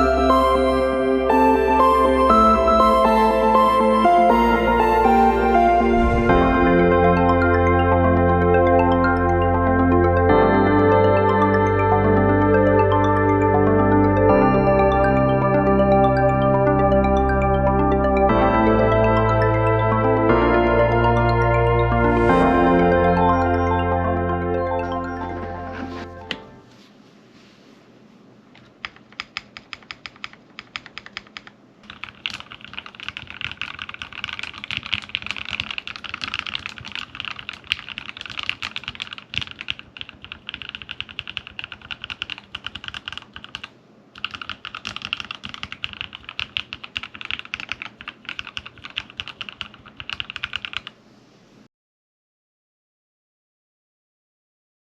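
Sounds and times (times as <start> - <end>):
typing on mechanical keyboard: 28.6 - 51.0.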